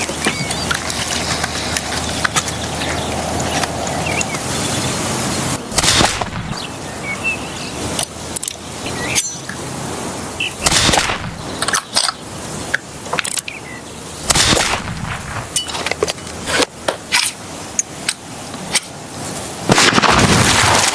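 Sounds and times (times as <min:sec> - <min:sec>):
rifle gunshot cracks: 0:05.7 - 0:06.6, 0:10.6 - 0:11.4, 0:14.2 - 0:15.6, 0:19.7 - 0:20.9.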